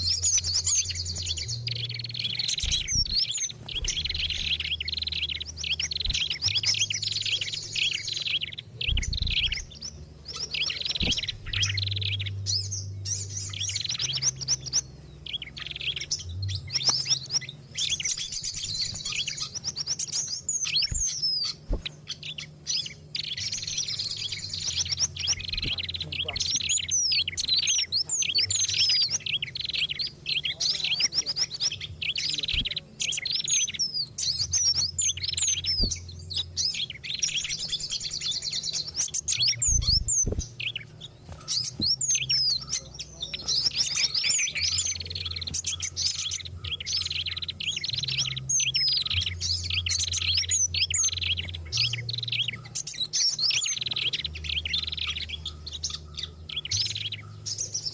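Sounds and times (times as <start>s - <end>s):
low hum: 0.0s - 27.6s
small songbirds chirping and trilling: 0.0s - 57.9s.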